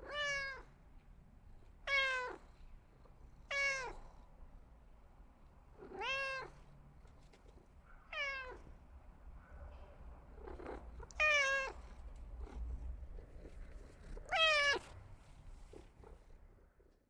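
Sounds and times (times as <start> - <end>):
cat meowing: 0.0 - 0.7, 1.8 - 2.4, 3.5 - 4.0, 5.8 - 6.6, 8.1 - 8.7, 10.6 - 12.0, 14.2 - 15.0.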